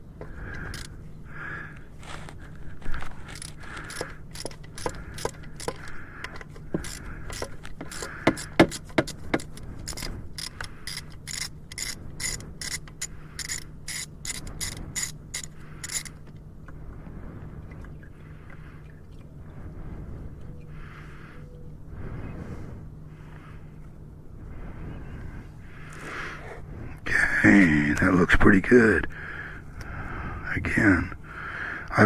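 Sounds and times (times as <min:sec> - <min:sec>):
ratchet wrench clicking: 0:00.5 - 0:00.9, 0:03.2 - 0:16.2.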